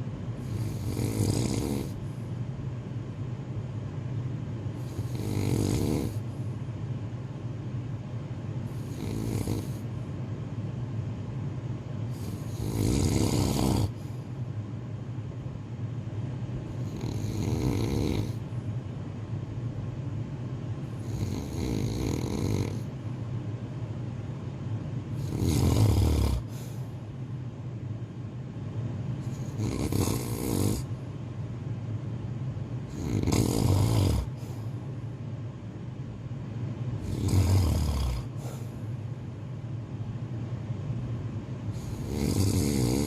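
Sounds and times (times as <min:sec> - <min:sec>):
steady low hum: 0:00.0 - 0:43.0
person snoring: 0:00.4 - 0:02.0, 0:04.8 - 0:06.2, 0:08.7 - 0:09.9, 0:12.1 - 0:14.0, 0:16.8 - 0:18.4, 0:21.0 - 0:22.9, 0:25.2 - 0:26.8, 0:29.2 - 0:30.9, 0:32.9 - 0:34.6, 0:37.0 - 0:38.8, 0:41.7 - 0:43.0.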